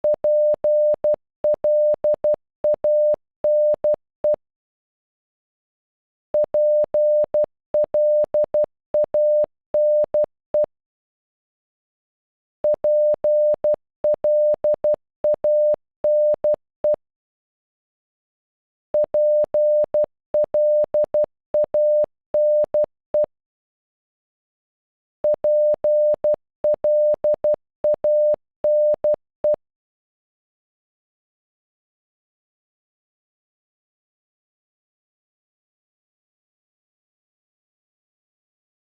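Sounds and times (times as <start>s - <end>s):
morse code beeps: 0.0s - 4.4s, 6.4s - 10.7s, 12.6s - 17.0s, 19.0s - 23.3s, 25.2s - 29.6s.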